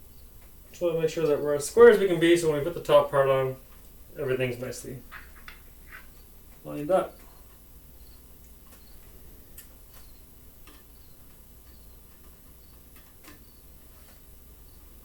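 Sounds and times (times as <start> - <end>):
low steady hum: 0.0 - 15.0
light clicks and taps of parts: 8.4 - 14.3.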